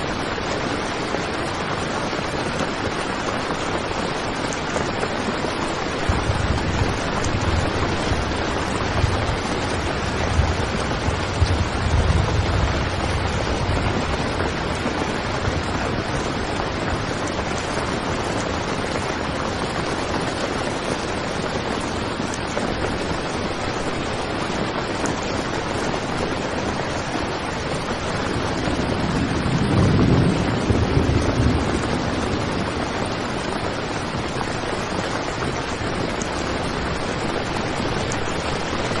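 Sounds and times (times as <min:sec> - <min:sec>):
heavy rain on a tent: 0:00.0 - 0:39.0.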